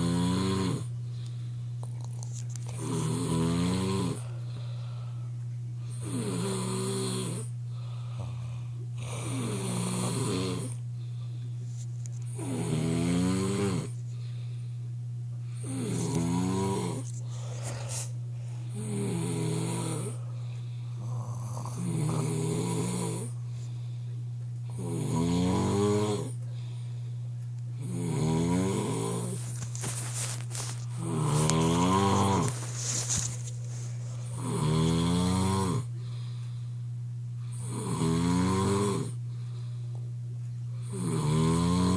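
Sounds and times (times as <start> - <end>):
person snoring loudly: 0.0 - 0.9, 2.7 - 4.3, 5.9 - 7.5, 9.0 - 10.8, 12.3 - 14.0, 15.6 - 18.0, 18.7 - 20.2, 21.0 - 23.4, 24.7 - 26.4, 27.8 - 29.4, 30.9 - 32.7, 34.3 - 35.9, 37.5 - 39.2, 40.8 - 41.9
steady low hum: 0.0 - 41.9.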